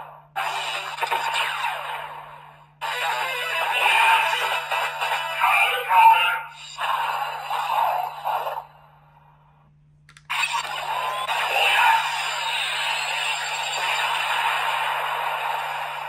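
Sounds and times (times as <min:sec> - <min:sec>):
toy voiced audio from small speaker: 0:02.8 - 0:08.6, 0:10.3 - 0:14.2.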